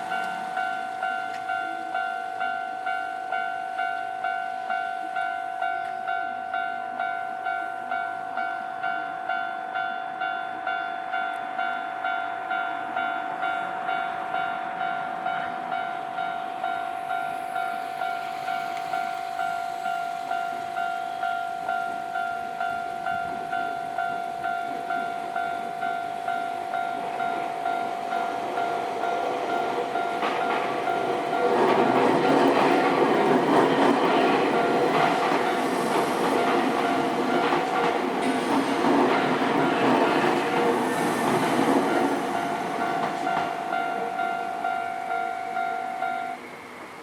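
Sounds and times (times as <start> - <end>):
level crossing warning bell: 0.0 - 47.0
approaching train rumble: 10.6 - 47.0.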